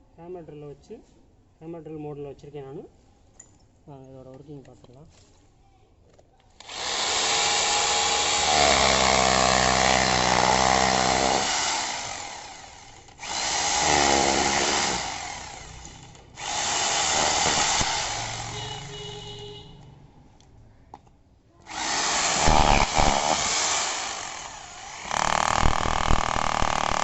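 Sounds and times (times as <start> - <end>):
rotary hammer drill running: 6.6 - 18.8, 21.7 - 27.0.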